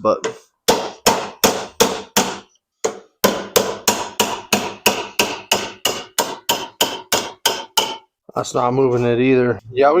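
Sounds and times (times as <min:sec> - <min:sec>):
hammer striking metal chisel: 0:00.2 - 0:08.1.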